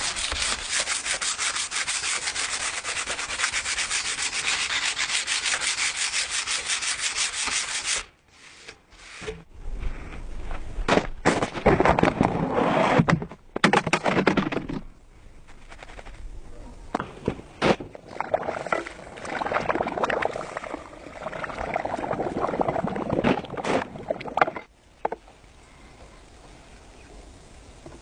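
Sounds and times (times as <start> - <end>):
hand sanding strokes: 0.0 - 9.3.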